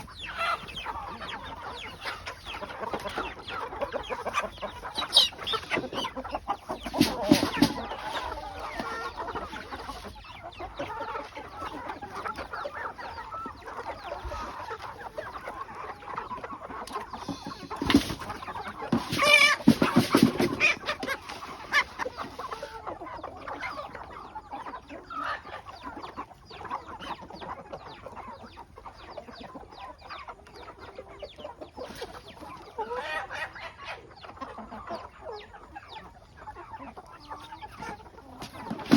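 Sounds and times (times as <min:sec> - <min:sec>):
chicken squawking calls: 0:00.0 - 0:16.1, 0:16.8 - 0:23.9
chickens clucking: 0:00.0 - 0:38.9.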